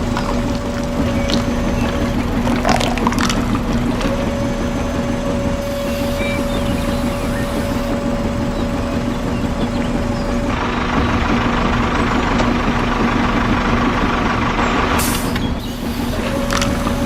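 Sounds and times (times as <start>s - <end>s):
small motor humming: 0.0s - 10.5s.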